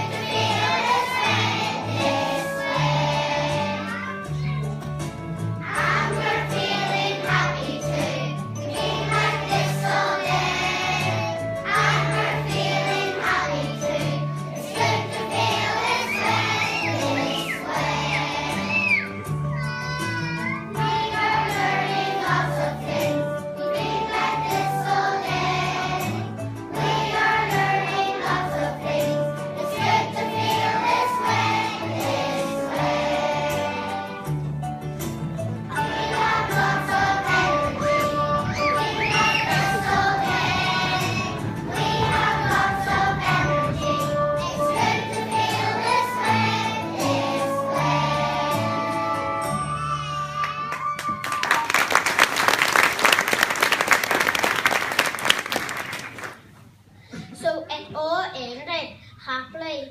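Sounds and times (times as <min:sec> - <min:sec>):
children singing: 0:00.0 - 0:04.2, 0:05.6 - 0:19.1, 0:20.8 - 0:34.3, 0:35.7 - 0:50.5
instrumental accompaniment with bass: 0:00.0 - 0:51.6.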